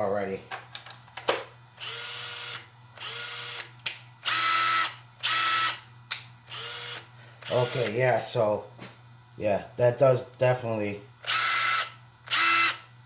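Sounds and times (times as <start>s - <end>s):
impact driver motor whine: 1.8s - 5.9s, 6.5s - 8.0s, 11.2s - 13.0s.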